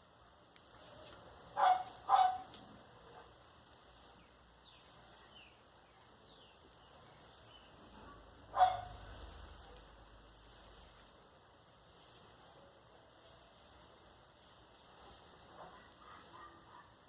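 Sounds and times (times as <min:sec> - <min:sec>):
dog barking: 0:01.6 - 0:02.5, 0:08.0 - 0:09.0, 0:15.6 - 0:17.0.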